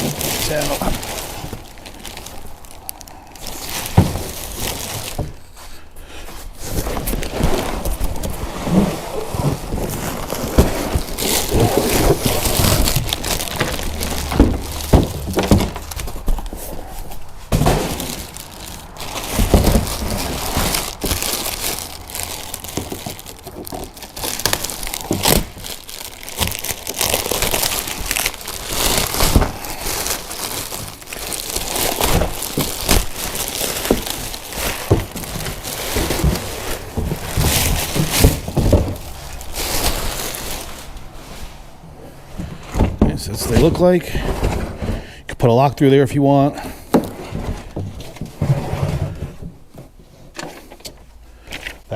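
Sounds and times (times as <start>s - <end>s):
cardboard packaging tearing: 0.0s - 5.4s, 6.6s - 41.2s
wrap crinkling: 0.0s - 44.7s
plastic boxes knocking: 3.7s - 5.4s, 7.0s - 28.3s, 31.4s - 39.5s.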